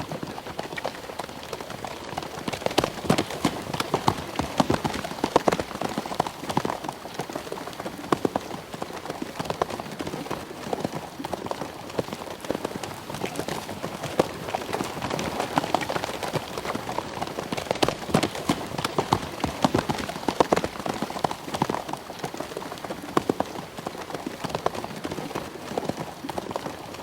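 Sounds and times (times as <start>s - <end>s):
horse hooves clip-clopping: 0.0s - 27.0s.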